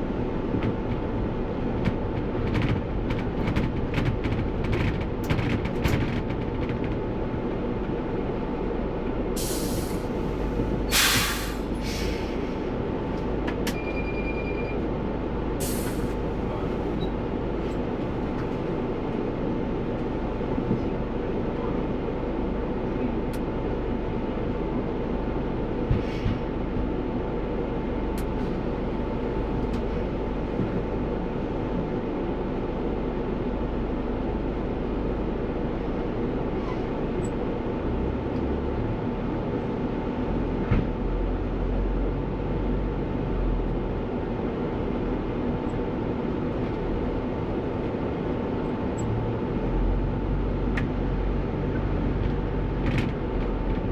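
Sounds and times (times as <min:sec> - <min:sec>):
bus engine and road noise: 0:00.0 - 0:53.9
brief high beep: 0:13.7 - 0:14.8.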